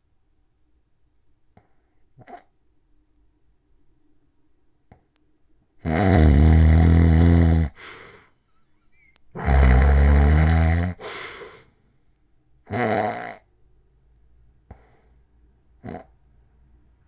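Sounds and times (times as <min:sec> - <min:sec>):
man snoring loudly: 0:05.8 - 0:08.2, 0:09.4 - 0:11.6
soft breath: 0:07.8 - 0:09.1, 0:11.0 - 0:11.8, 0:14.7 - 0:15.4.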